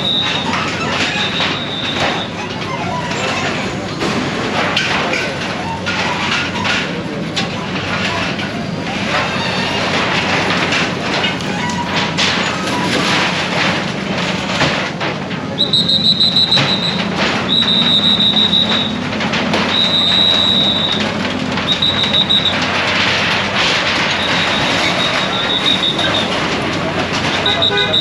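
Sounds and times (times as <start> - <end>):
shrill whistle blasts: 0.0 - 0.5, 1.2 - 2.3, 15.6 - 19.0, 19.6 - 21.1, 21.7 - 22.6, 24.2 - 26.4, 27.4 - 28.0
street noise: 0.0 - 28.0.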